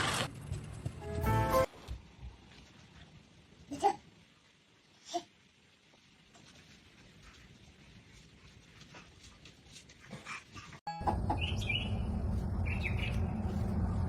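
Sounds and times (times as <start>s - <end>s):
steady low hum: 11.1s - 14.0s
bird chirping: 11.3s - 13.5s.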